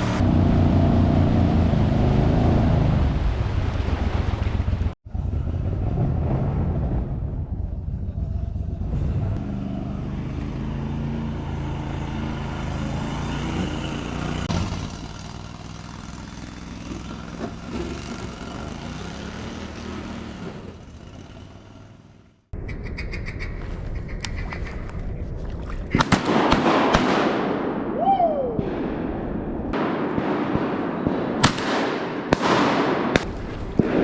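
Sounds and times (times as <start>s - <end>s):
vehicle engine running: 4.6s - 22.6s.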